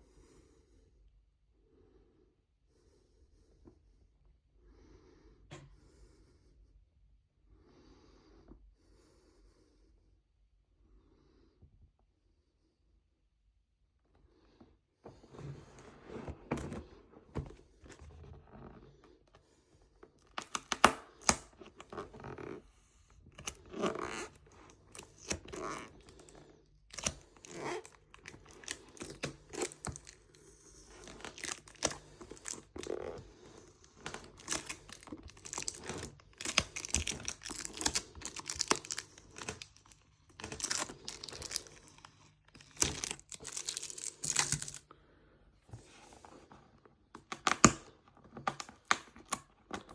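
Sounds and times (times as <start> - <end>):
cardboard and plastic crinkling: 23.3 - 44.8.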